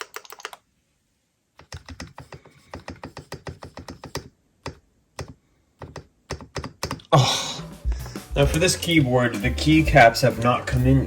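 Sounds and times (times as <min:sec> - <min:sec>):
mechanical keyboard typing: 0:00.0 - 0:00.6, 0:01.6 - 0:07.1.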